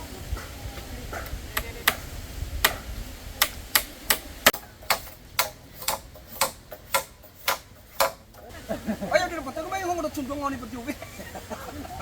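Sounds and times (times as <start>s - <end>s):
sharp knocks: 2.6s - 8.4s.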